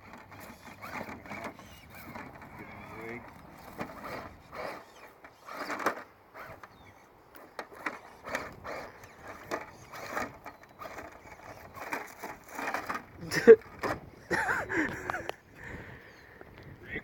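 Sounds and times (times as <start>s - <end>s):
knocks and scrapes on terrain: 0.0s - 6.8s, 7.4s - 14.1s
small electric motor whirring: 0.0s - 14.0s.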